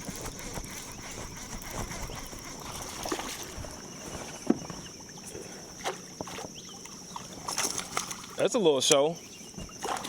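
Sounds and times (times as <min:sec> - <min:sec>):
water splashing: 0:02.6 - 0:04.2, 0:05.0 - 0:10.0.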